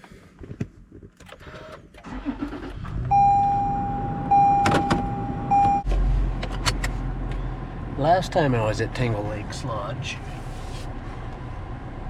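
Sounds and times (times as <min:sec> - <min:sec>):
car engine starting and idling: 0:01.2 - 0:12.0
electronic warning tone: 0:03.1 - 0:05.8.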